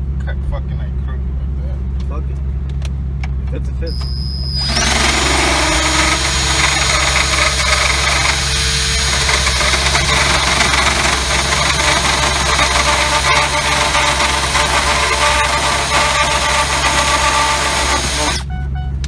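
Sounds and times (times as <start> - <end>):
rotary tool grinding plastic: 4.6 - 18.5.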